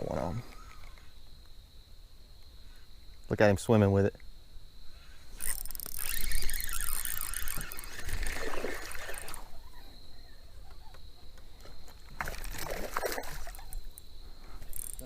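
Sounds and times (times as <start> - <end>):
fish splashing in water: 5.5 - 9.6, 12.2 - 13.9.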